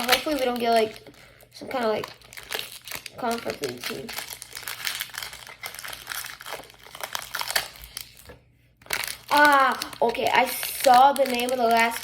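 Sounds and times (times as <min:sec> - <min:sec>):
person speaking: 0:00.0 - 0:02.2, 0:03.0 - 0:04.3, 0:09.2 - 0:12.0
wrapper crinkling and tearing: 0:00.0 - 0:12.0.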